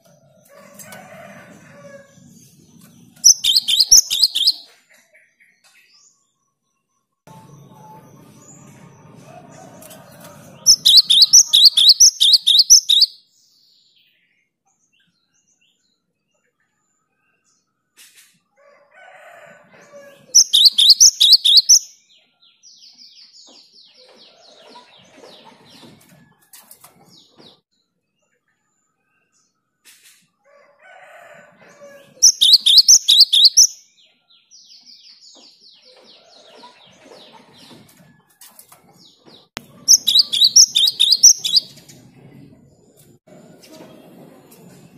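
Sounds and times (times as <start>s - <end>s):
bird singing whistled notes: 3.2s - 4.7s, 10.7s - 13.2s, 20.4s - 22.0s, 32.2s - 33.9s, 39.9s - 41.7s
soft bird chattering calls: 3.2s - 4.7s, 10.7s - 13.2s, 20.4s - 21.9s, 32.2s - 33.8s, 39.8s - 41.8s.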